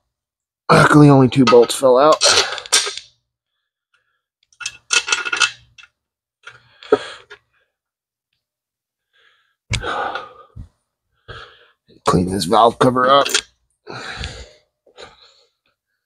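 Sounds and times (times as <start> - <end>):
small metal parts clinking: 4.5 - 6.6.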